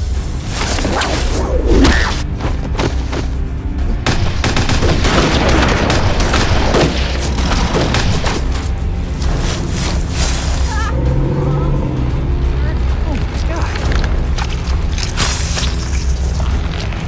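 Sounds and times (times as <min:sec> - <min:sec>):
heavy low booms: 0:00.0 - 0:17.0
tense film score: 0:00.0 - 0:17.0
rapid gunfire: 0:04.0 - 0:08.6.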